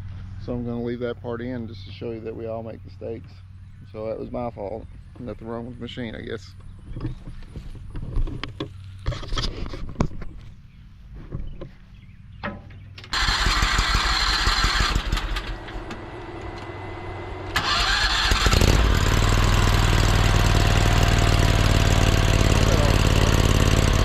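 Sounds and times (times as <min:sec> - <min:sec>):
small gasoline engine idling: 0:13.1 - 0:24.0
engine revving high: 0:16.7 - 0:24.0.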